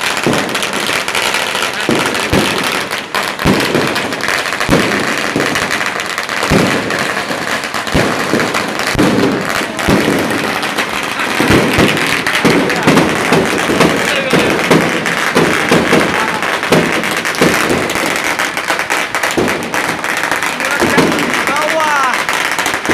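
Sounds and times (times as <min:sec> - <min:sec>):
firecrackers crackling: 0:00.0 - 0:22.9
voices: 0:09.3 - 0:17.0, 0:19.9 - 0:22.9.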